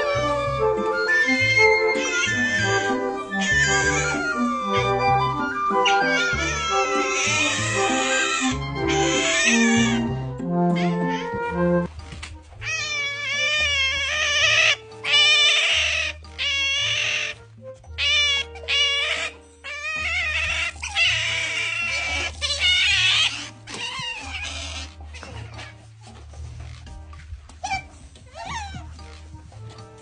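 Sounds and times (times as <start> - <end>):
cat meowing and yowling: 0.0 - 4.8, 5.7 - 10.1, 10.7 - 11.7, 12.6 - 17.4, 18.0 - 25.7, 27.6 - 29.0
background music with bass: 0.0 - 12.6.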